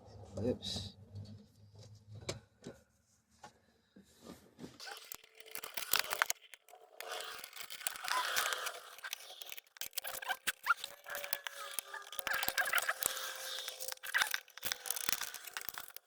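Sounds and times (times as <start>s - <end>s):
rustling and scraping of wiring: 4.2s - 16.0s
sharp plastic clip clicks: 4.8s - 16.0s.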